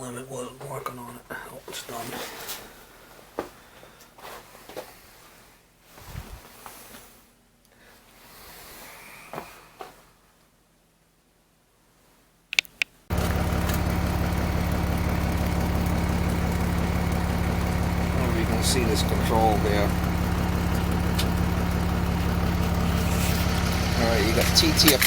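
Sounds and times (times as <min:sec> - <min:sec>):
sharp clicks: 0:12.6 - 0:14.2
oil burner running: 0:13.1 - 0:25.0.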